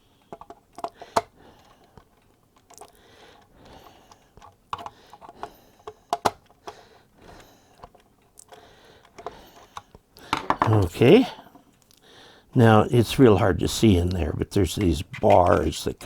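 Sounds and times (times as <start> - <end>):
metal and plastic clicks: 0.2 - 10.9.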